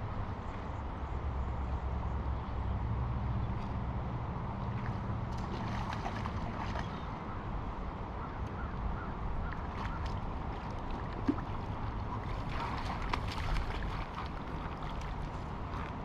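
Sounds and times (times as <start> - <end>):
wind rumble on microphone: 0.0 - 16.0
creek water rushing: 9.0 - 16.0.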